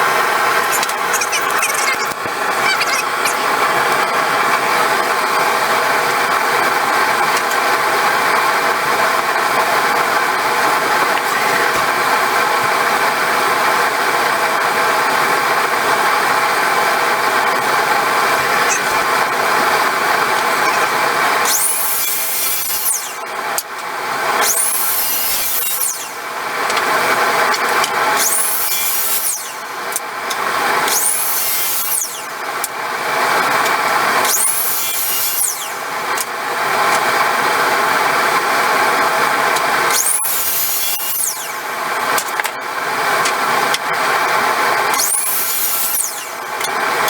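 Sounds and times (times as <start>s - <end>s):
power tool motor running: 0.0s - 47.0s
high-pitched rasping cut on wood: 16.5s - 47.0s.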